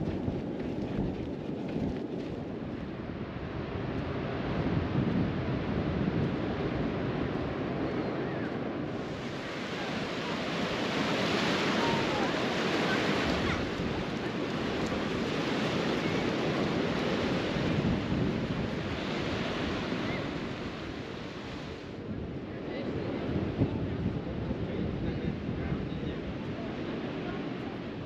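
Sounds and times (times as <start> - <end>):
wind buffeting the microphone: 0.0 - 28.0
ocean surf washing up beach: 3.2 - 25.6, 26.2 - 28.0.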